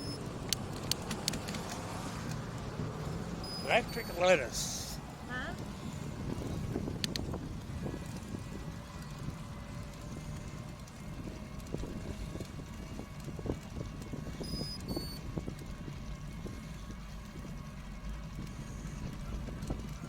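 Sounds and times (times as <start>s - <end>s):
short high electronic beeps: 0.0s - 0.2s, 3.4s - 4.2s
small rattles: 0.0s - 4.4s
bicycle tyre rumble: 0.0s - 20.0s
wind buffeting microphone: 0.0s - 20.0s.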